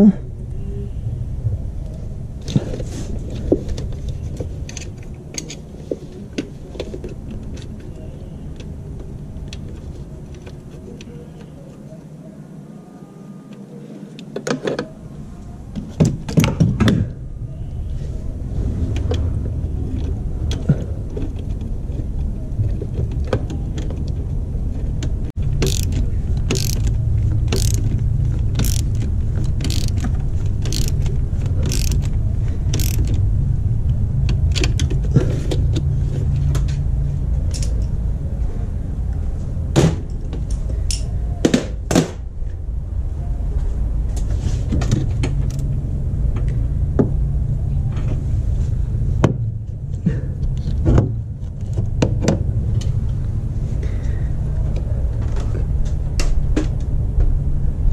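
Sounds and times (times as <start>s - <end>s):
low mechanical hum: 0.0s - 57.9s
ratchet wrench clicking: 25.6s - 28.0s, 28.6s - 33.2s.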